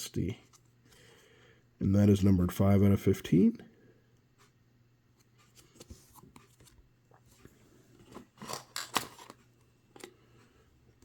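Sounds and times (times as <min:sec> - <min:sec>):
trading cards clicking and rustling: 0:08.1 - 0:09.4.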